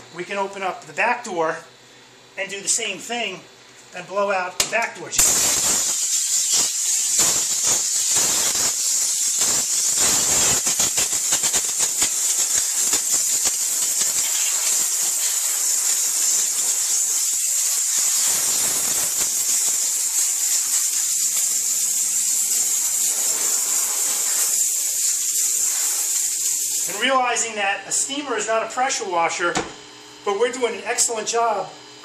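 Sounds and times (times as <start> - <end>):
steam cleaner hissing: 5.2 - 27.4.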